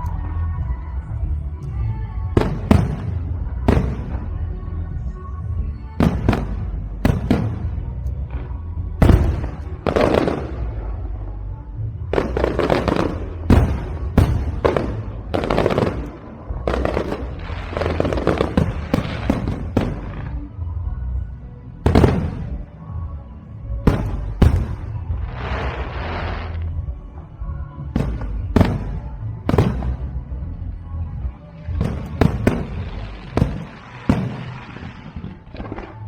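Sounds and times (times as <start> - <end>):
fireworks bangs: 12.2 - 20.4, 21.9 - 22.6, 23.9 - 26.6, 31.7 - 36.0.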